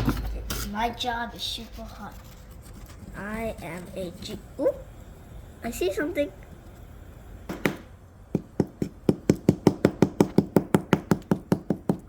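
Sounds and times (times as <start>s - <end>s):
hand tool tapping plaster block: 8.4s - 12.0s.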